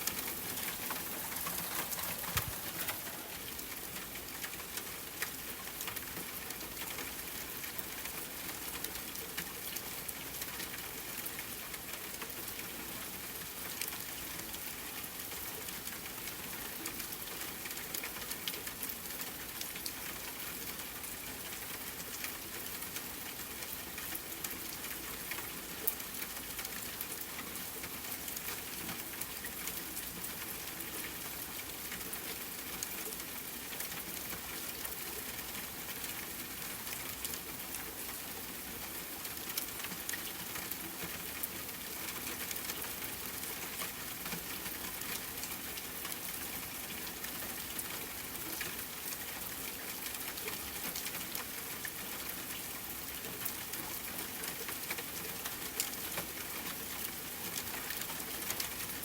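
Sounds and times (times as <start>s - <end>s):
campfire crackling: 0.0s - 3.8s
rain pattering on a tent: 0.0s - 59.0s.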